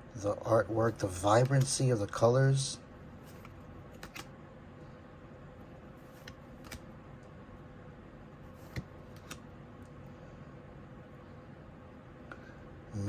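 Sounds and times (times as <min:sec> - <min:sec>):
faint steady hum: 0:00.0 - 0:13.0
cards clicking and tapping: 0:03.3 - 0:04.3, 0:06.0 - 0:06.9, 0:08.5 - 0:09.4.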